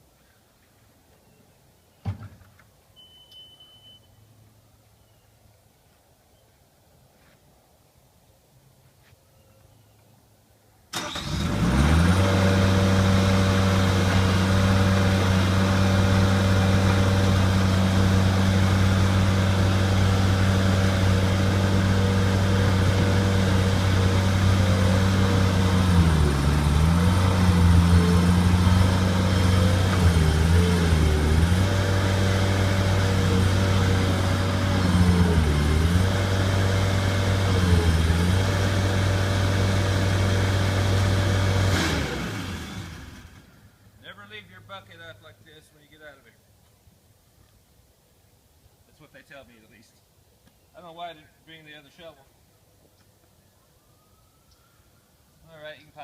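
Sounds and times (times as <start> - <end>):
skid steer engine running: 11.0 - 43.6.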